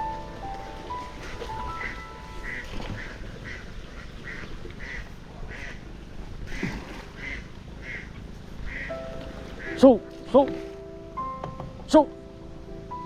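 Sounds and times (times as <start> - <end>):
ducks quacking: 0.9 - 10.6.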